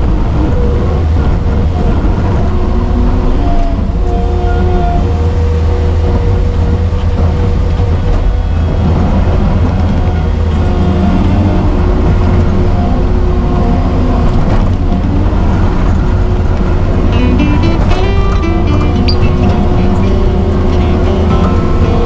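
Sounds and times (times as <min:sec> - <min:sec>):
diesel engine running loudly: 0:19.0 - 0:22.0.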